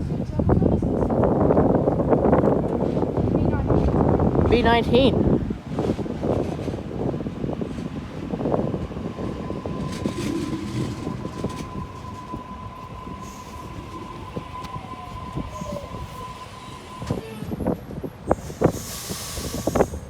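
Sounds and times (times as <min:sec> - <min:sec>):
train wheels clattering over rails: 0:05.6 - 0:14.8.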